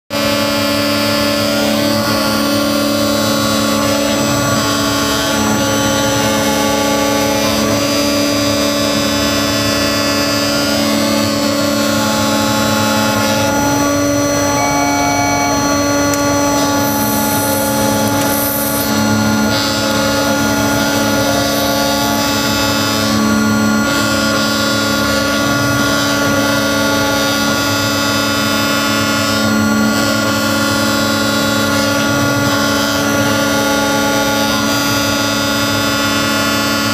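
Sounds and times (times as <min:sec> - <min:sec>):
router spindle whine: 0:00.1 - 0:36.9
plastic cutting noise: 0:15.4 - 0:24.7.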